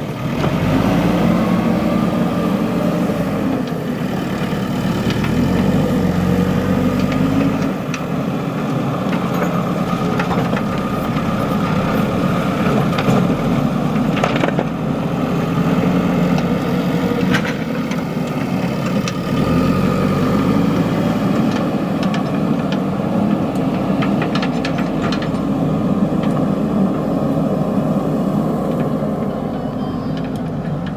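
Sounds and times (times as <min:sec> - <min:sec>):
diesel engine running: 0:00.0 - 0:30.9.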